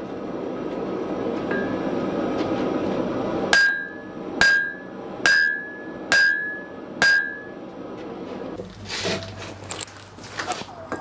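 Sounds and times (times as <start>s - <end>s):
steady rushing noise: 0.0s - 9.6s
hammer striking metal anvil: 1.5s - 1.8s, 3.5s - 7.6s.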